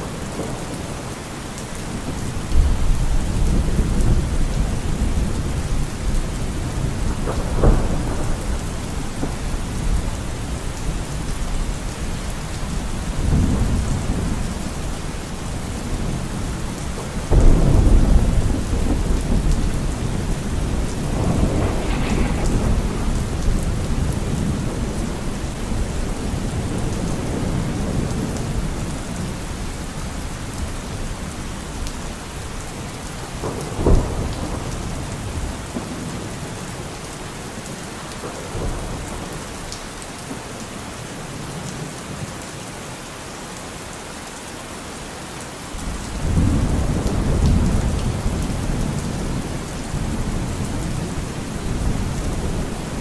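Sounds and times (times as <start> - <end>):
steady rainfall: 0.0 - 53.0
thunder rumbling: 1.8 - 30.2
thunder clap: 1.9 - 11.0, 17.2 - 28.7.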